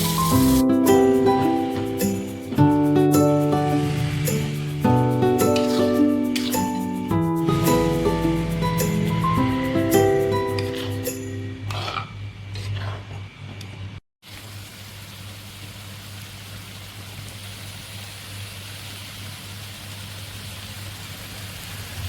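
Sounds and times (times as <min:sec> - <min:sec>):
background music: 0:00.0 - 0:11.6.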